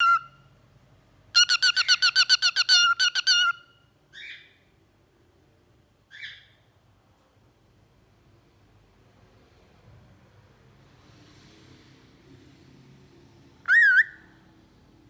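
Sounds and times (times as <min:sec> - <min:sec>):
raspy bird chirps: 0:01.4 - 0:04.6.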